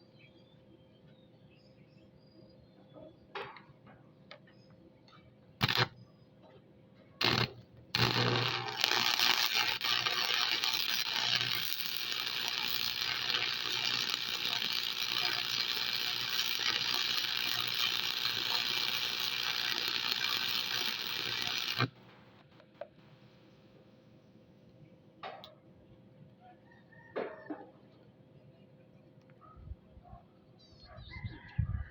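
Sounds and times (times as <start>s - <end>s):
arc welding sizzling crackle: 5.6s - 6.0s, 7.2s - 22.4s.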